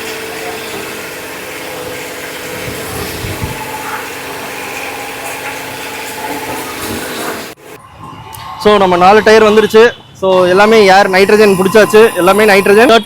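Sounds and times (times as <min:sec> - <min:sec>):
machinery humming: 0:00.0 - 0:13.0.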